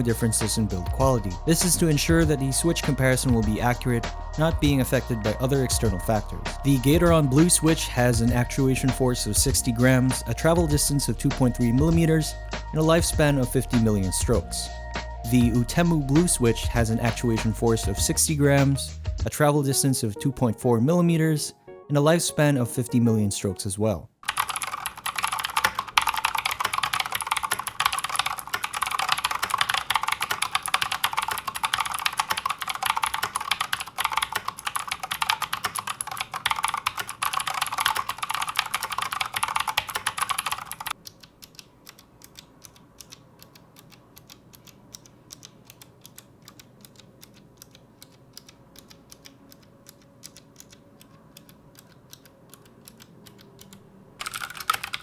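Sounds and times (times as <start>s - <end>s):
typing on mechanical keyboard: 24.2s - 55.0s.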